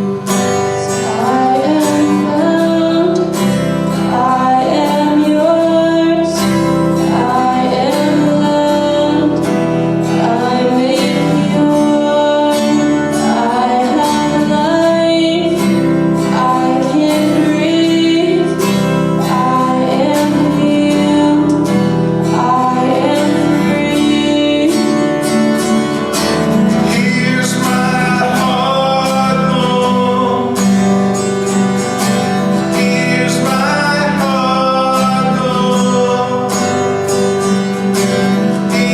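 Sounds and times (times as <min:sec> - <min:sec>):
person singing: 0:00.0 - 0:38.9
strummed acoustic guitar: 0:00.0 - 0:38.9.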